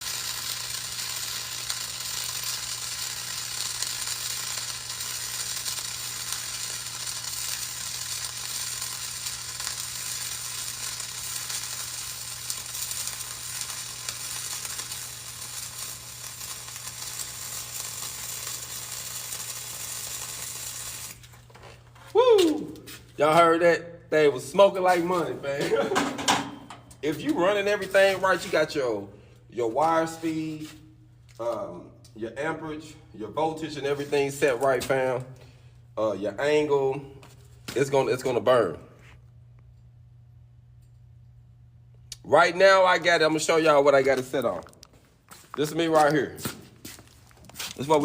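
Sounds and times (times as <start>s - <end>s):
welding arc crackling sizzle: 0.0s - 48.0s
low steady hum: 21.2s - 45.3s.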